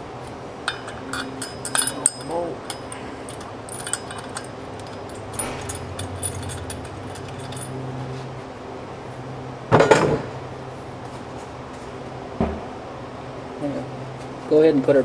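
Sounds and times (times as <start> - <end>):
low hum: 0.0 - 9.6
metal tools clinking: 0.6 - 8.3
loud metal clank: 0.7 - 7.8.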